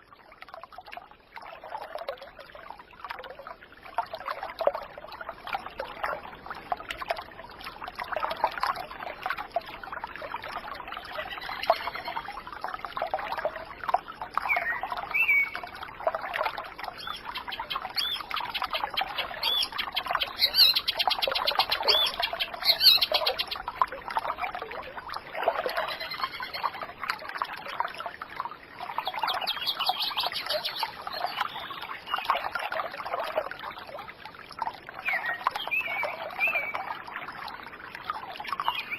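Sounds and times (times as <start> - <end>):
water trickling and burbling: 0.0 - 38.9
bird fast trill: 17.0 - 23.6
small birds chirping: 17.0 - 23.6, 29.0 - 32.3.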